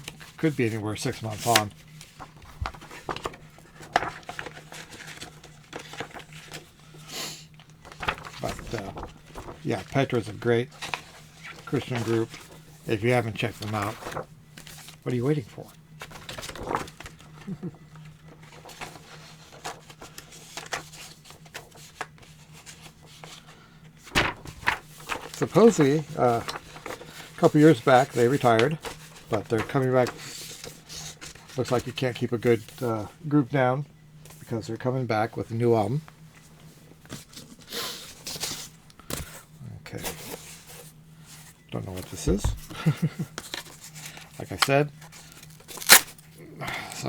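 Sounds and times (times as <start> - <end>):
paper and cardboard rustling: 0.0 - 33.0, 35.8 - 47.0
faint low hum: 0.0 - 47.0
taps and rustles of packaging: 41.9 - 46.2.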